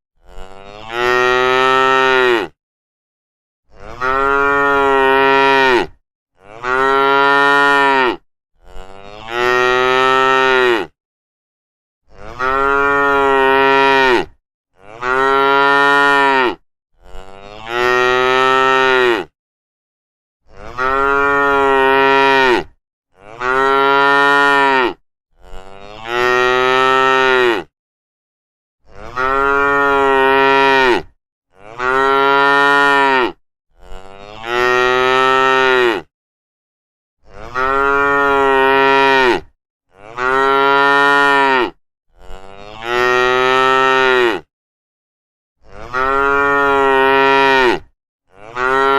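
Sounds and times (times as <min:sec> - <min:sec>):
cows mooing: 0:00.2 - 0:02.6, 0:03.8 - 0:10.9, 0:12.1 - 0:19.3, 0:20.6 - 0:27.7, 0:29.0 - 0:36.1, 0:37.4 - 0:44.5, 0:45.7 - 0:47.8, 0:48.4 - 0:48.9.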